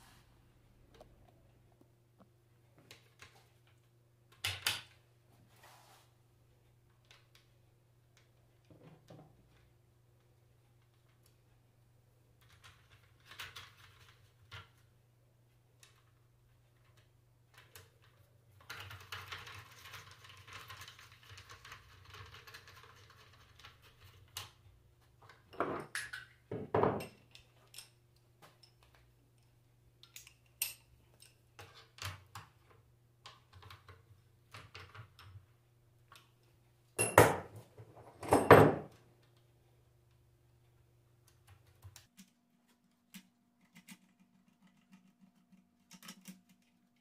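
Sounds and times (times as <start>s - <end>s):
metal tools clinking on workbench: 37.0s - 37.5s.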